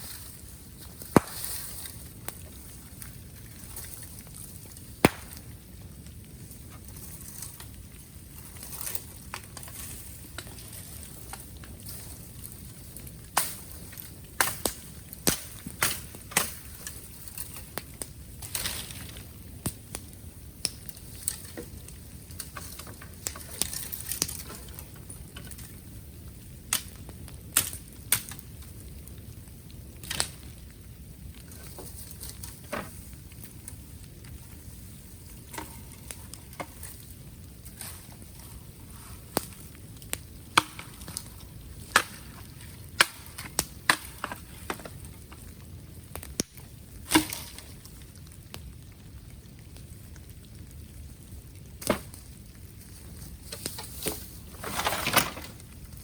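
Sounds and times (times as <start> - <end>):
bamboo stalks popping: 0.0 - 2.6, 3.4 - 5.8, 13.3 - 20.1, 35.3 - 45.5, 46.2 - 47.9, 51.8 - 52.3
bonfire crackling and hissing: 0.0 - 56.0.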